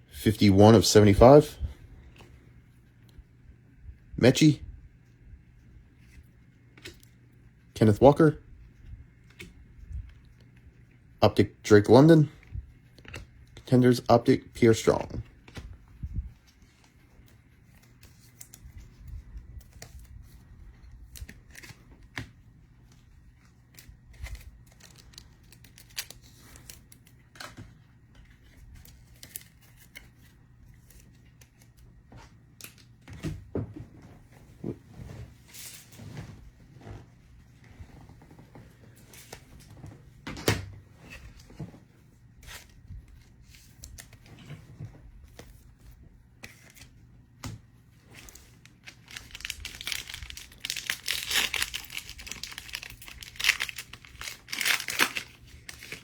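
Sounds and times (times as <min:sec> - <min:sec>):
cards and wrappers rustling: 0:12.1 - 0:33.0, 0:47.9 - 0:56.0.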